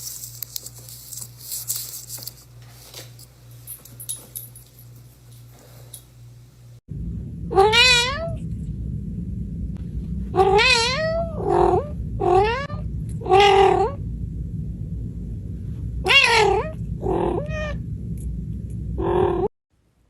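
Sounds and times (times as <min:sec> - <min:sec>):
steady low background noise: 0:06.2 - 0:20.0
cat meowing loudly: 0:07.5 - 0:08.4, 0:10.4 - 0:11.4.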